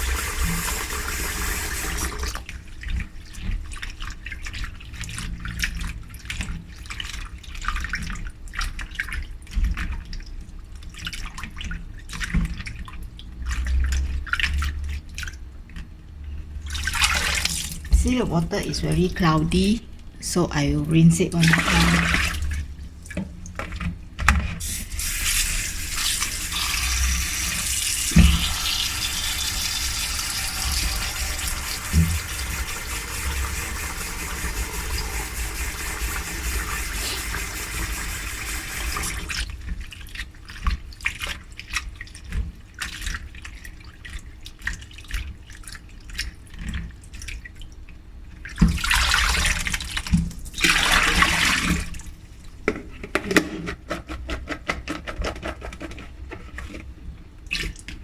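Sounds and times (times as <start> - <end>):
water splashing: 16.6 - 23.9, 24.6 - 47.5, 48.5 - 52.2
tap running into bowl: 26.0 - 39.3.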